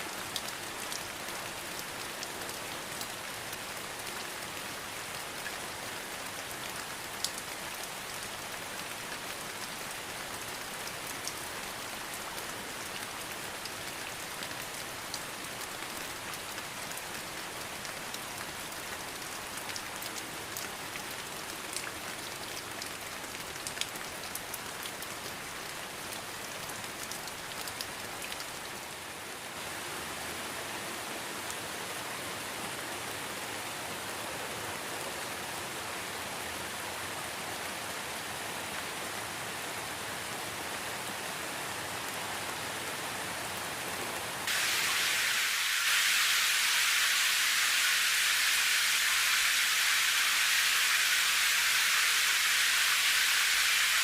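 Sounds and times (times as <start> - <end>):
steady rain: 0.0 - 54.0
rain drop ticks: 0.3 - 4.2, 6.6 - 9.7, 10.8 - 11.8, 12.4 - 25.4, 26.1 - 28.5.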